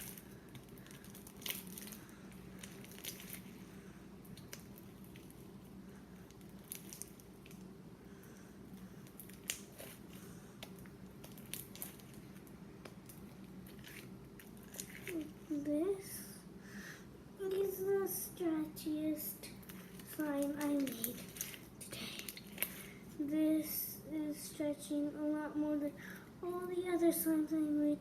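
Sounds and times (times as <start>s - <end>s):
slime squishing: 0.0s - 15.7s, 19.3s - 23.1s.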